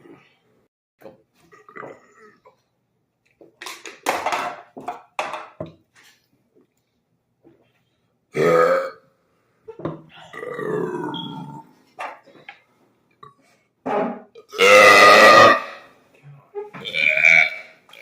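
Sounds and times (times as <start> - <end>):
young men burping: 8.4 - 9.0, 14.4 - 15.9, 16.8 - 18.0.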